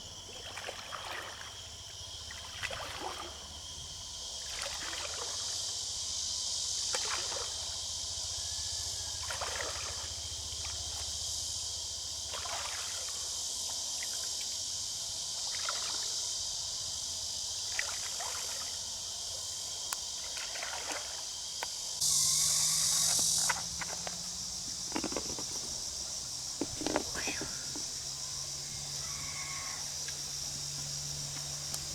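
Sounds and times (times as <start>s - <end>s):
water sloshing and swishing: 0.2s - 3.6s, 20.2s - 21.4s, 23.0s - 31.9s
steady high hiss: 21.9s - 31.9s.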